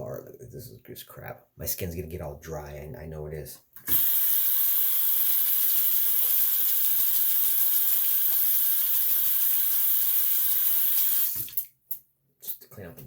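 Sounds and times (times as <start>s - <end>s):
tap water running into sink: 3.8s - 11.8s.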